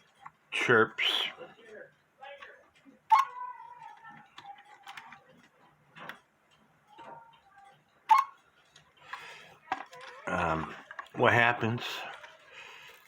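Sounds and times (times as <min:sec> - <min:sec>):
clock mechanism clicking: 0:01.6 - 0:13.0
sharp clock clicks: 0:03.1 - 0:03.4, 0:08.0 - 0:08.4.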